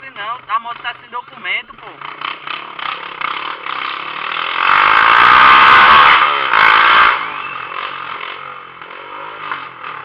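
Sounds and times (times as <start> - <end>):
motorcycle engine revving: 0.0 - 10.0.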